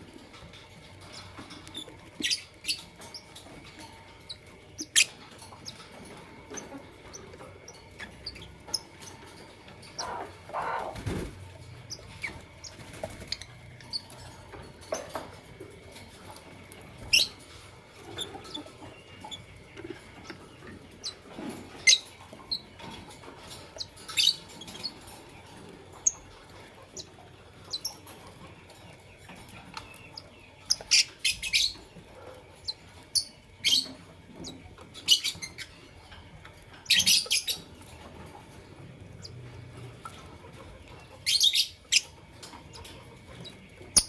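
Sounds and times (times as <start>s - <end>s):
lovebirds chirping: 1.0s - 14.2s, 27.0s - 38.0s.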